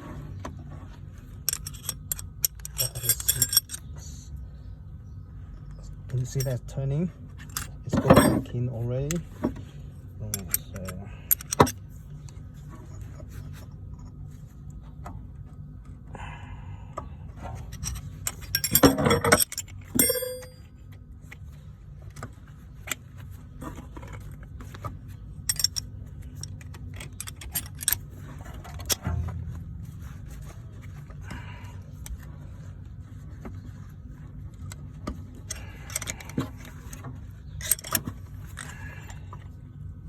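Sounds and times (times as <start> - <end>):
steady low hum: 0.0 - 40.0
metal tools clinking: 1.5 - 3.9, 6.2 - 6.7, 7.4 - 9.2, 10.2 - 11.8, 17.6 - 20.7, 25.5 - 29.0, 37.6 - 38.9
metallic clank ringing: 20.0 - 20.6.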